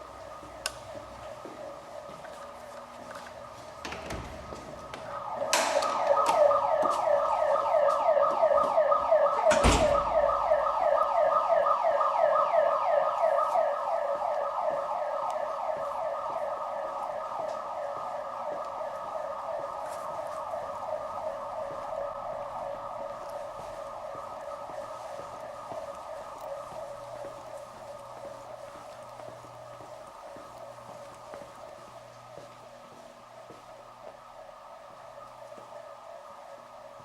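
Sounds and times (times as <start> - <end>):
building alarm warbling: 0.1 - 28.8.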